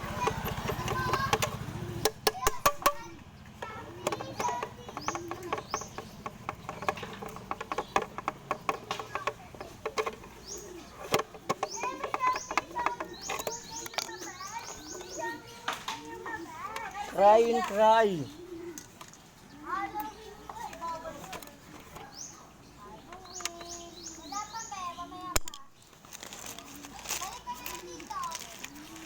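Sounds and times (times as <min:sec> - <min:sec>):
birds chirping: 0:00.0 - 0:29.0
clicks and taps of small parts: 0:00.2 - 0:16.1, 0:23.1 - 0:23.8, 0:25.3 - 0:29.0
faint voices: 0:02.9 - 0:29.0.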